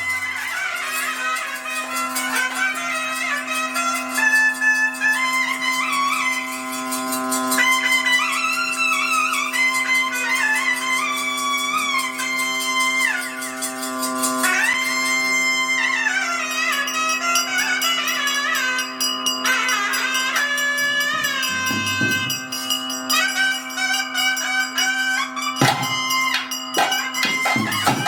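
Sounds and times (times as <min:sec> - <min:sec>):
reed wind instrument melody: 0:00.0 - 0:28.0
quick percussion strikes: 0:20.4 - 0:23.5, 0:25.5 - 0:28.0
steady drone: 0:20.6 - 0:23.0.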